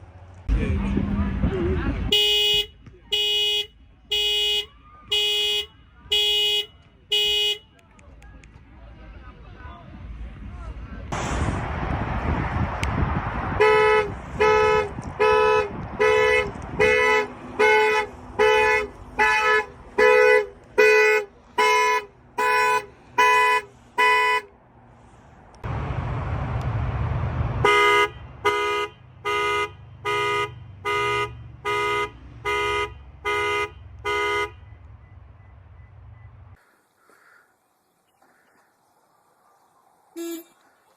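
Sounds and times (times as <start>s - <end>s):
car horn honking: 2.1s - 7.8s, 13.6s - 24.5s, 27.6s - 36.3s, 40.2s - 40.6s
rushing noise: 11.1s - 20.0s, 24.8s - 28.4s.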